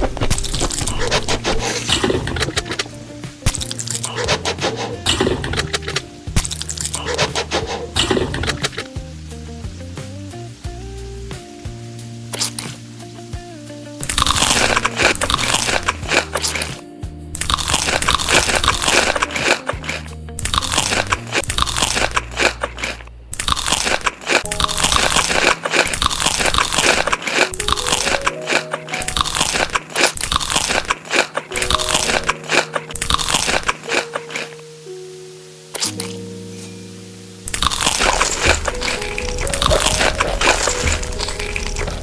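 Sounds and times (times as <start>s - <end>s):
crunching and chewing crisp food: 0.0s - 8.9s, 14.0s - 16.8s, 17.4s - 34.6s, 37.5s - 42.0s
background music: 0.0s - 42.0s.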